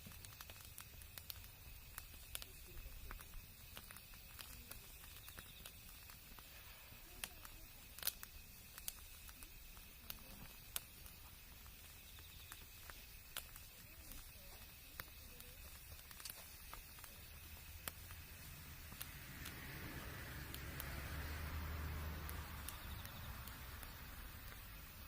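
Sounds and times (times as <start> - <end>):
campfire crackling and popping: 0.0 - 25.0.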